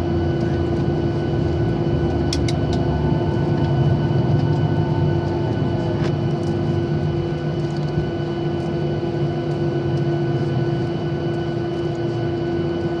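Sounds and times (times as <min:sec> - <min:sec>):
jet engines humming in cabin: 0:00.0 - 0:13.0.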